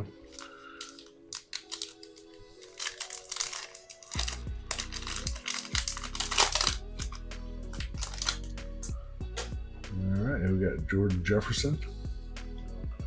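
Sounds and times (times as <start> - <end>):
foil wrapper crinkling and tearing: 0.2 - 8.5
background music with bass beat: 4.2 - 13.0.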